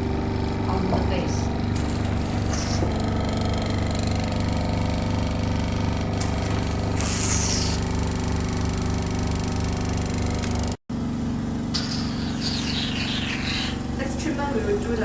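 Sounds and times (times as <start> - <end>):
suction pump pulsing hum: 0.0 - 15.0
burst of hiss: 6.9 - 7.8.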